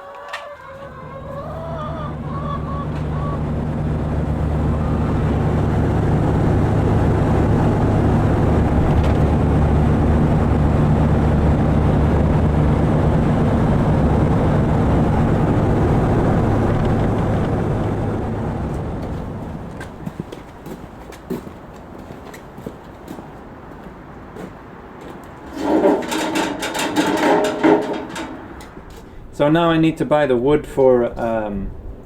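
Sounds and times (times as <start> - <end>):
vehicle engine running: 2.1 - 20.8.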